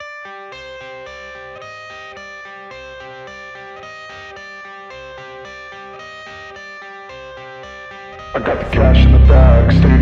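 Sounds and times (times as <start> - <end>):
electric guitar playing: 8.0 - 10.0.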